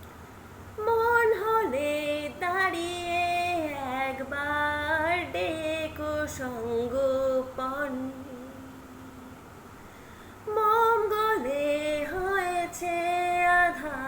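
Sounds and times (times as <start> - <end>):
woman singing solo: 10.4 - 14.0.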